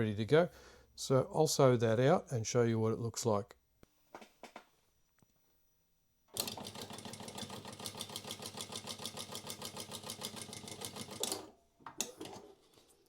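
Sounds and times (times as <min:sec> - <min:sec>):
sewing machine needle strokes: 0:06.4 - 0:11.4.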